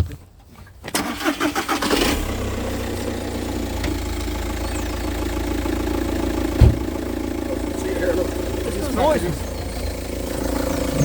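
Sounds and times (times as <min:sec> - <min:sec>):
car engine cranking: 0:00.9 - 0:11.0
car engine idling: 0:01.0 - 0:11.0
short low thump: 0:06.5 - 0:07.0.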